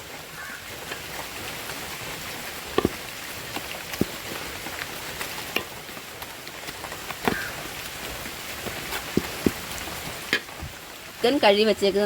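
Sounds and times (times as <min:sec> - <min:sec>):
steady rain: 0:00.0 - 0:12.0
sharp knocks: 0:02.8 - 0:03.0.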